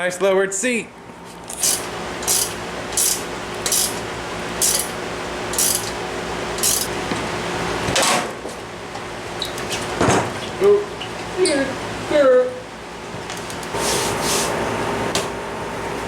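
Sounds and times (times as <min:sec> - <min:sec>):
ratchet wrench clicking: 0:01.5 - 0:04.0, 0:04.6 - 0:06.0, 0:06.6 - 0:06.9.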